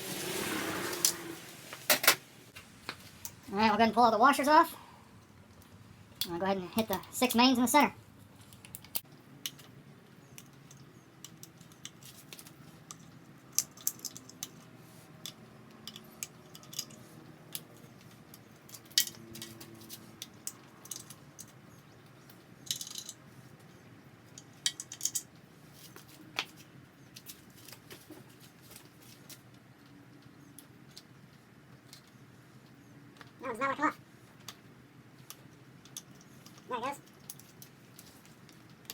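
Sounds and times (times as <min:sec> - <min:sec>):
metallic clicks of tools and washers: 0:10.3 - 0:21.6, 0:22.6 - 0:23.2, 0:24.3 - 0:25.3.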